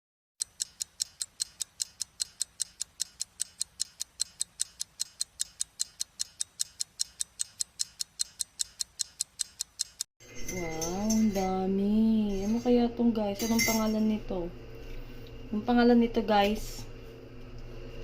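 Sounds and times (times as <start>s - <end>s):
fast even ticking: 0.4s - 10.1s.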